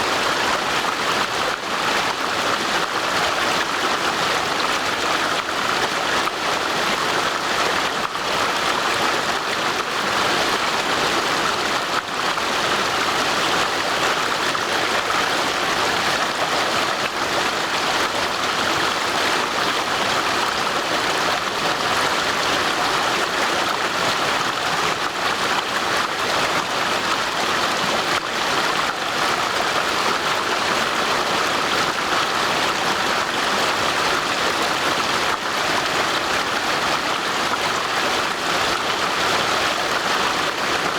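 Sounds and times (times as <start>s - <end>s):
stream water rushing: 0.0s - 40.9s.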